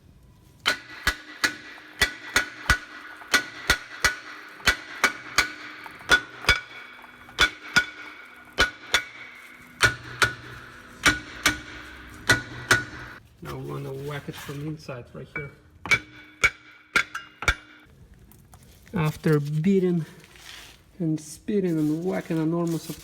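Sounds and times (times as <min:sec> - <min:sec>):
hammer striking ringing metal: 0:00.6 - 0:13.2, 0:15.3 - 0:17.9.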